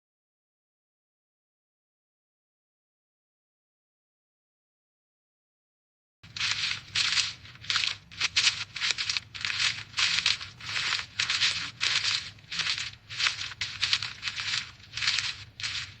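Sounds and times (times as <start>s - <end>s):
footsteps crunching dry leaves: 6.3s - 16.0s.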